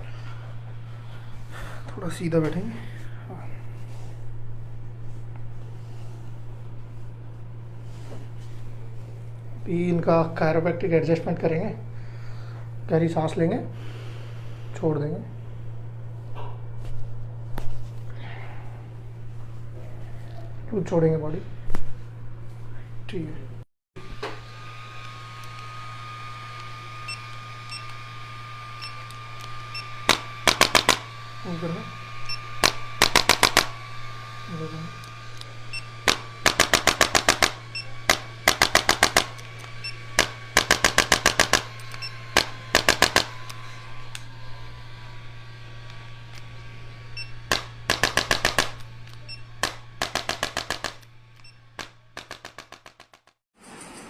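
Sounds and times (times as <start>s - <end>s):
steady low hum: 0.0s - 52.9s
high-pitched electrical whine: 24.0s - 51.8s
rapid sharp clicks: 29.4s - 31.1s, 32.6s - 33.8s, 36.0s - 43.5s, 47.5s - 53.4s.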